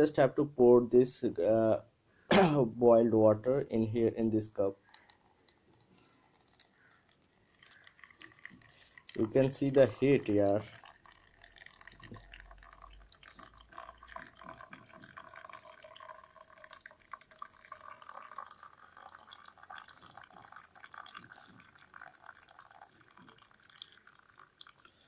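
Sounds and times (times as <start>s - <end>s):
water dripping and trickling in a cup: 4.8s - 25.0s
small clicks: 4.9s - 7.4s.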